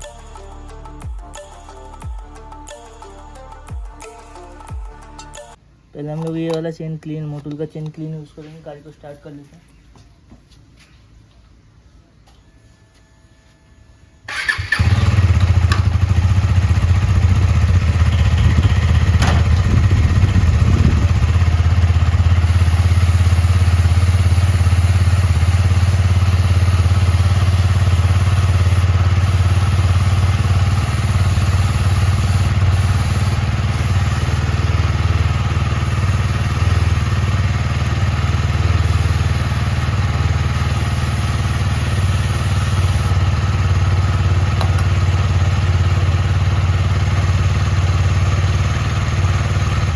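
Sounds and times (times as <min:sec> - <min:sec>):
motorcycle engine starting and idling: 0:14.2 - 0:49.9.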